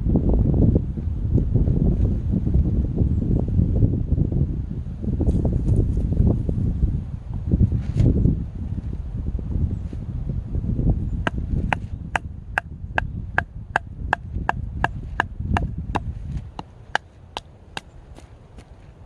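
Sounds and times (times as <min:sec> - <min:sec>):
firewood chopping with a blade: 0:11.3 - 0:12.3, 0:14.1 - 0:17.9.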